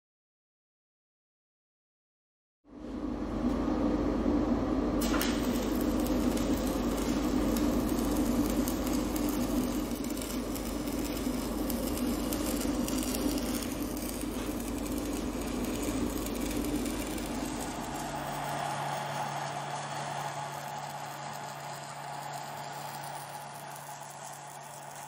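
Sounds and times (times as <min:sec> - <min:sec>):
welding arc burning: 0:05.0 - 0:25.0.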